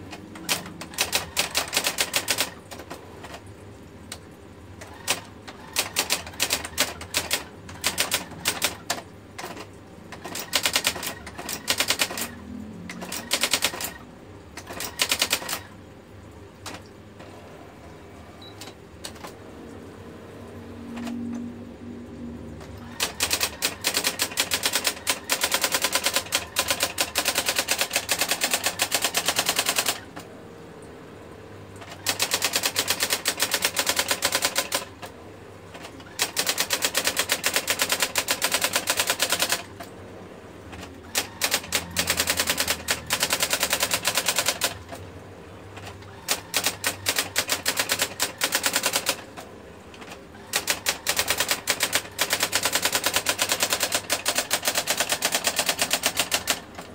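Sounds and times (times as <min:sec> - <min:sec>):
typewriter strike clicks: 0:00.1 - 0:03.4, 0:04.8 - 0:14.0, 0:14.6 - 0:15.7, 0:22.6 - 0:30.3, 0:40.7 - 0:45.0, 0:45.8 - 0:49.4, 0:50.0 - 0:56.9.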